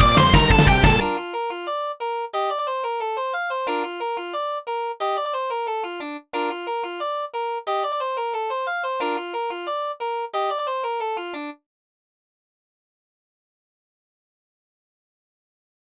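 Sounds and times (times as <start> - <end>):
fast electronic synth music: 0.0 - 1.2.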